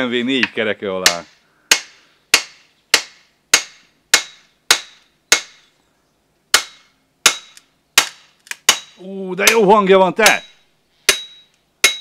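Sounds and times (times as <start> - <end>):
blows on axe head ringing: 10.2 - 12.0.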